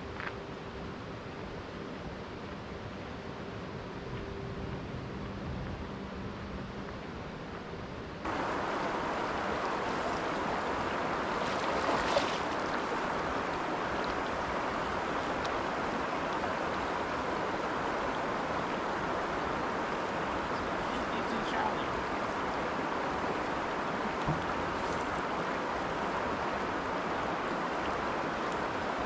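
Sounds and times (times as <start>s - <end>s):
creek rushing: 8.2s - 29.0s.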